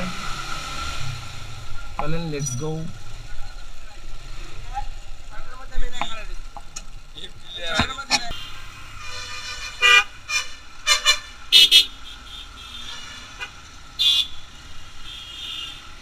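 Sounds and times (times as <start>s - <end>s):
low hum of traffic: 0.0s - 16.0s
vehicle horns tooting: 7.2s - 15.9s.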